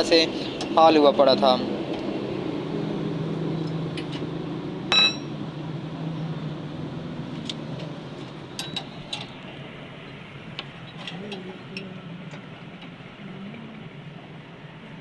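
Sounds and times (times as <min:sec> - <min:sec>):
steady low hum: 0:00.0 - 0:08.6
ringing metallic clink: 0:04.9 - 0:05.4.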